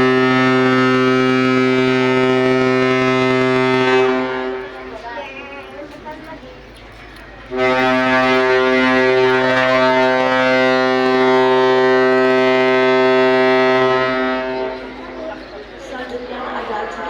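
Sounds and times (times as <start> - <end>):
ship horn blast: 0.0 - 5.0, 7.5 - 15.5.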